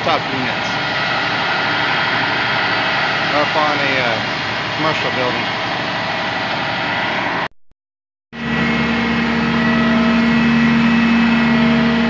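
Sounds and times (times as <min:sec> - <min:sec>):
crane engine droning: 0:00.0 - 0:07.5, 0:08.4 - 0:12.0.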